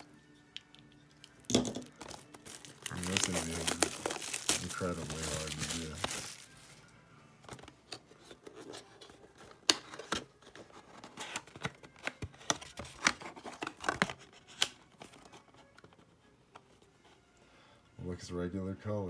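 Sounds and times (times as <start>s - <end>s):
packaging clicks and snips: 0.6s - 6.6s, 7.6s - 15.3s.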